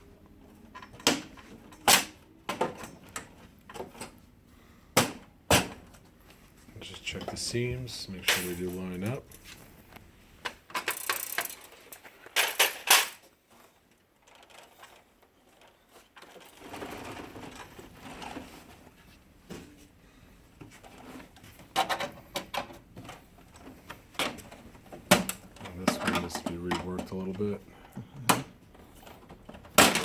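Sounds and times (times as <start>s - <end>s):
plastic scraping and rubbing: 15.5s - 19.2s.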